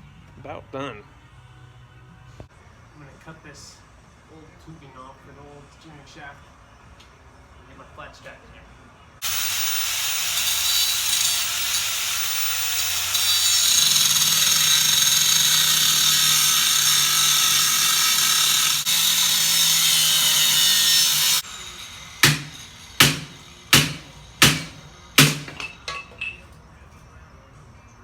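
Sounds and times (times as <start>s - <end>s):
power tool cutting metal tubing: 9.2s - 26.3s
sharp knocks: 22.2s - 26.2s.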